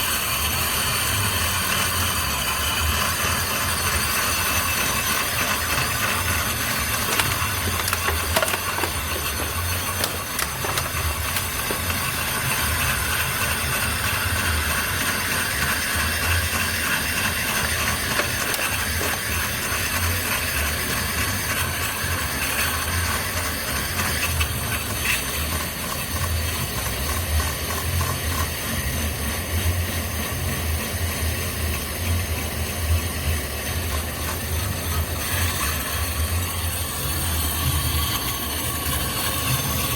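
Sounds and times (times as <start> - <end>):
stone scraping spinning brake disc: 3.2 - 20.6.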